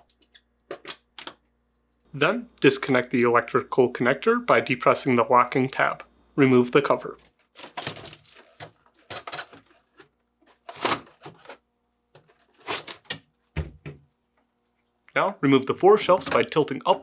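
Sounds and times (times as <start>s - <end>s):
plastic clacks and rattles: 7.6s - 11.6s.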